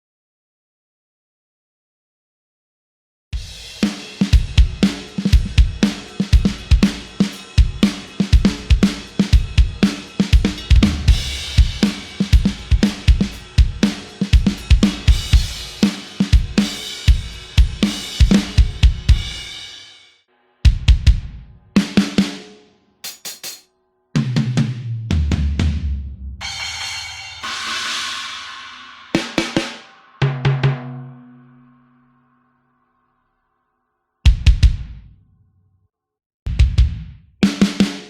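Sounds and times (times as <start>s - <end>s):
rock drum kit groove: 3.4s - 20.0s, 20.7s - 25.0s, 26.4s - 31.2s, 34.3s - 35.2s, 36.5s - 38.0s.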